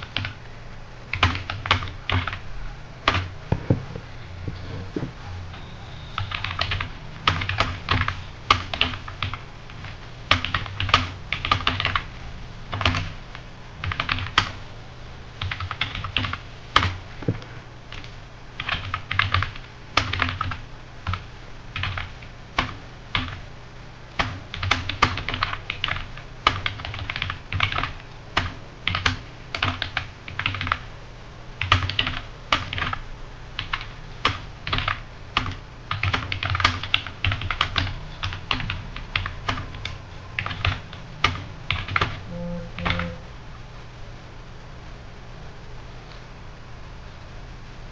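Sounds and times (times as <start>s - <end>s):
computer keyboard typing: 0.0s - 0.4s, 1.1s - 2.4s, 3.0s - 3.3s, 6.0s - 12.1s, 12.7s - 13.2s, 13.8s - 14.6s, 15.4s - 17.0s, 17.9s - 23.4s, 24.1s - 30.9s, 31.6s - 33.0s, 33.6s - 43.2s.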